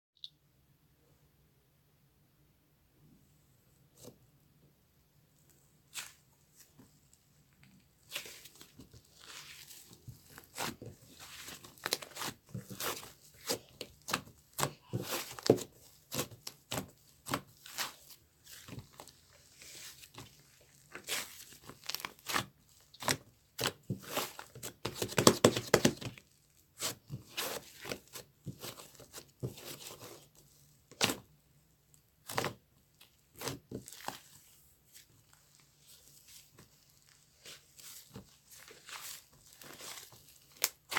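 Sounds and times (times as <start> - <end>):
crinkling and tearing: 32.3 - 40.9.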